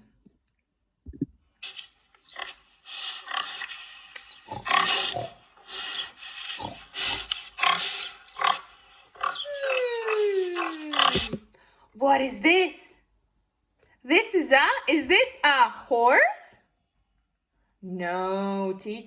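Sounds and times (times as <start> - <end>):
pig grunting and squealing: 2.3 - 11.5.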